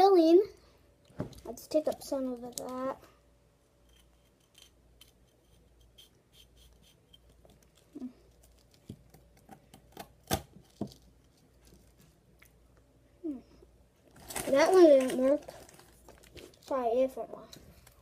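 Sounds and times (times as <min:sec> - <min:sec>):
small knife clicking and scraping: 0:03.8 - 0:07.9.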